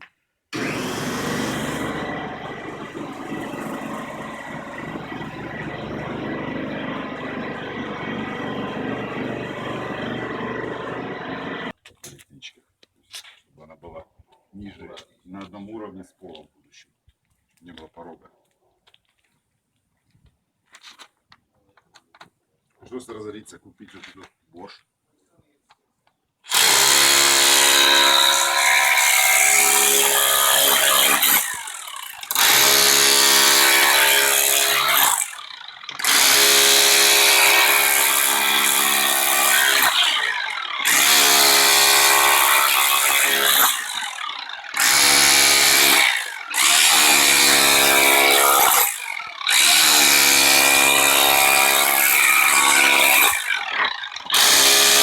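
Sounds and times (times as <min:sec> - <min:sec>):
power tool motor bursts: 0:00.6 - 0:06.6, 0:26.5 - 0:55.0.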